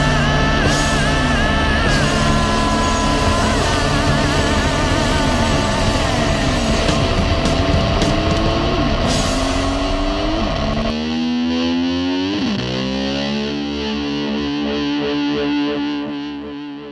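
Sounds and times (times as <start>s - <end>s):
low rumbling noise: 0.0s - 11.1s
distorted electric guitar rock music: 0.0s - 16.9s.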